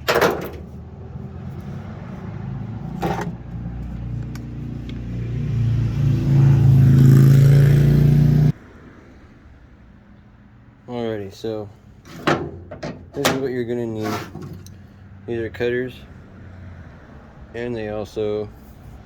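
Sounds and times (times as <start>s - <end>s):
car engine revving: 1.0s - 8.6s.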